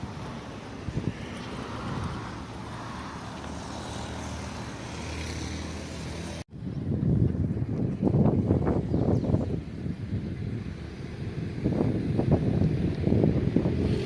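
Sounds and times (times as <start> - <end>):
wind buffeting microphone: 0.0 - 4.5, 6.2 - 14.0.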